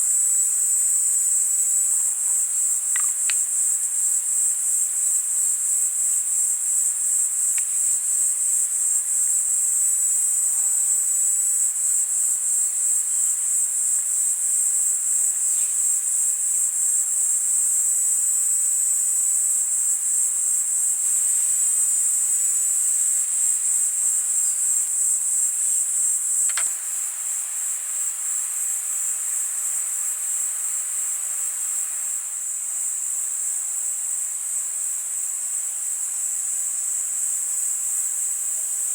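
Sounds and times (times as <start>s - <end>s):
insects trilling: 0.0s - 38.9s
single click: 3.0s - 3.4s, 26.4s - 26.8s.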